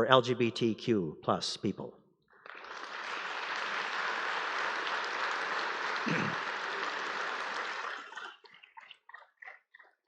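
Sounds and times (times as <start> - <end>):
crowd applauding: 2.4 - 9.0.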